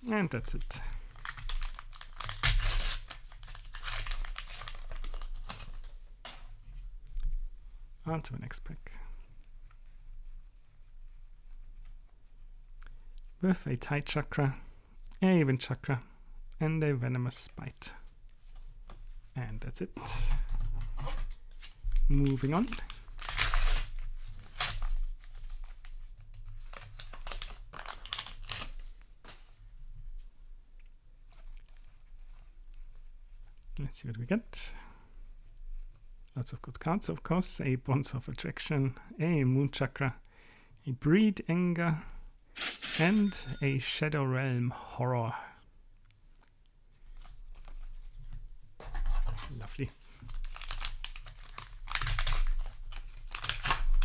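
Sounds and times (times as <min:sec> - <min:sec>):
wrapper crinkling and tearing: 0:00.0 - 0:06.0, 0:22.1 - 0:29.4, 0:49.3 - 0:54.0.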